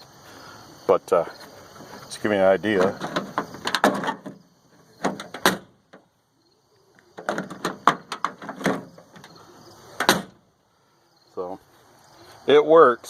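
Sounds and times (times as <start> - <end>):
car door latch clicking: 10.0 - 10.4.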